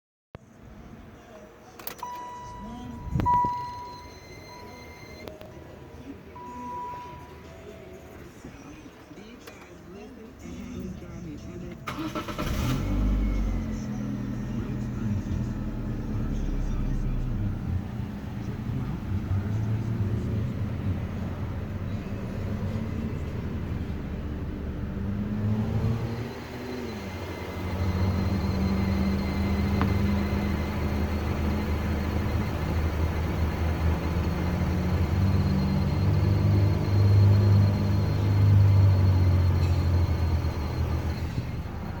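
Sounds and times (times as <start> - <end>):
faint high steady tone: 2.0 - 5.3, 6.0 - 8.8, 26.0 - 42.0
car engine running: 2.1 - 5.4, 9.5 - 42.0.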